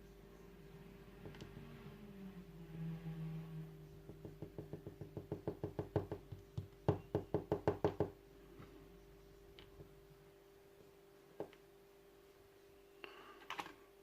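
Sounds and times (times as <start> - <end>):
low hum: 0.0 - 4.5.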